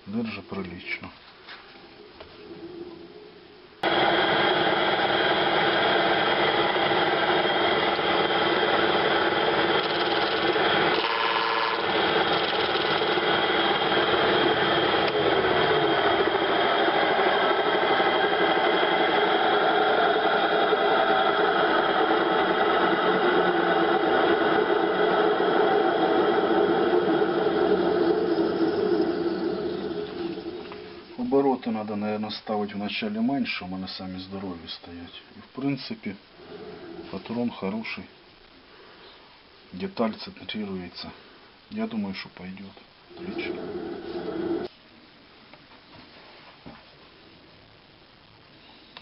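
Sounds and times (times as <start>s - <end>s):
woodworking lathe running: 3.8s - 31.0s, 43.1s - 44.7s.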